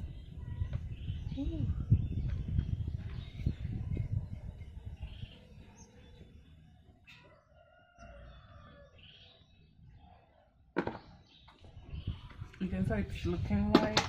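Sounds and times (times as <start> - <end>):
rooster crowing: 7.2 - 9.0.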